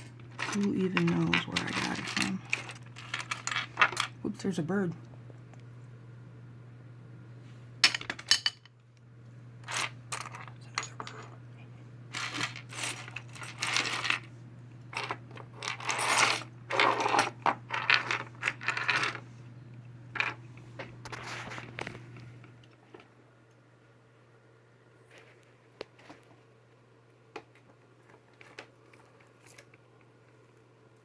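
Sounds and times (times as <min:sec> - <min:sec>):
figurines clicking and rattling: 0:00.0 - 0:04.2
steady low hum: 0:00.0 - 0:31.0.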